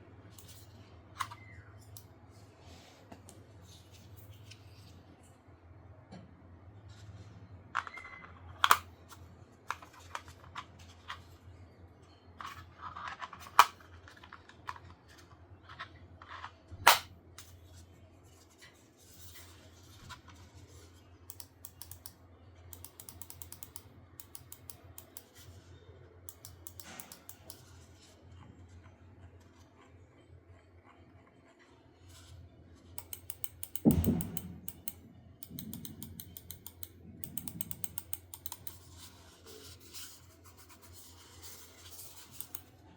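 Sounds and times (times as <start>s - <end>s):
quick light mouse clicks: 33.0s - 39.0s.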